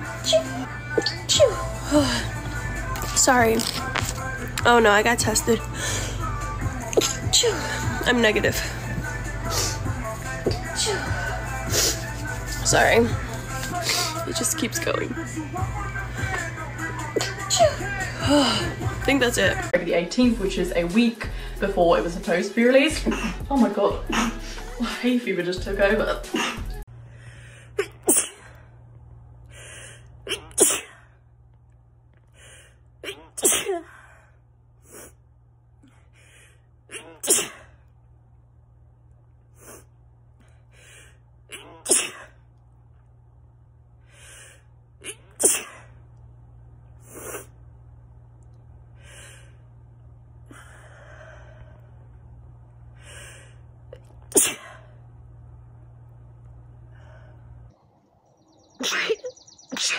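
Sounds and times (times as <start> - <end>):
person sneezing: 30.3 - 31.0, 33.1 - 33.9, 36.9 - 37.8, 41.6 - 42.4, 45.0 - 45.9, 54.3 - 54.9.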